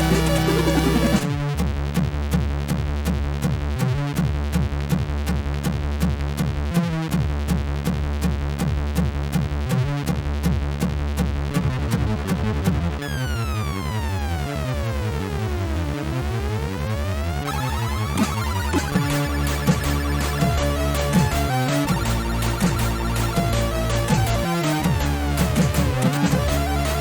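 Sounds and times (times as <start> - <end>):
electronic synthesizer music: 0.0 - 1.4, 11.6 - 27.0
falling synth sweeps: 17.4 - 27.0.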